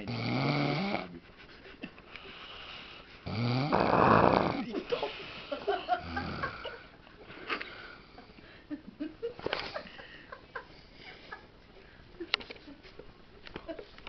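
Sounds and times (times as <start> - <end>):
man snoring: 0.0 - 1.1, 3.3 - 4.7.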